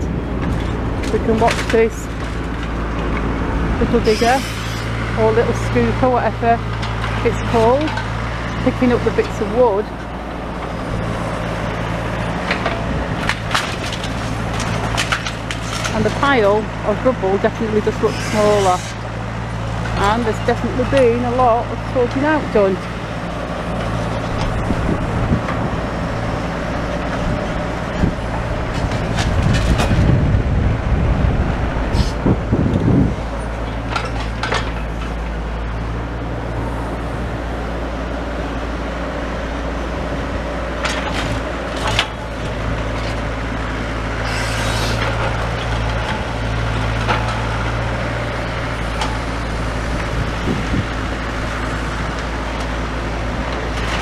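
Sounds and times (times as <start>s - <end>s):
digger engine running: 0.0s - 54.0s
wood and rubble clattering: 12.5s - 16.4s.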